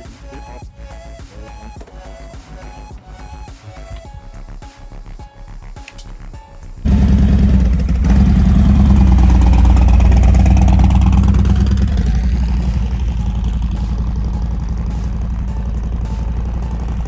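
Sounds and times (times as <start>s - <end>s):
motorcycle engine running: 6.8s - 17.0s.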